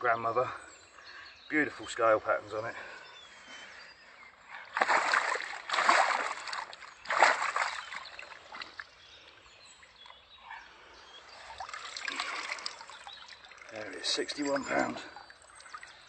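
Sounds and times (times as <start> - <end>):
water splashing: 4.7 - 9.0, 11.3 - 16.0.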